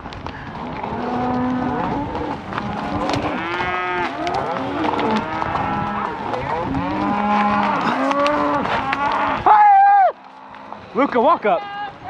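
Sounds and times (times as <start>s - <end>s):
cows and calves mooing: 0.4s - 11.5s.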